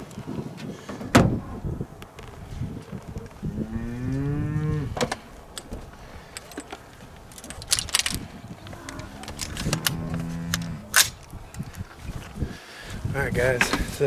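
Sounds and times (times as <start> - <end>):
cow mooing: 3.4 - 5.0, 8.6 - 11.0
sharp clicks: 7.4 - 11.8.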